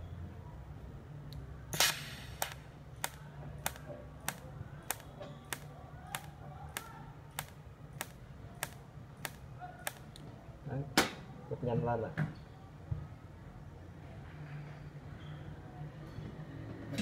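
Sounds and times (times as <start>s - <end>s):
welder pulse generator clicking: 1.8s - 10.0s.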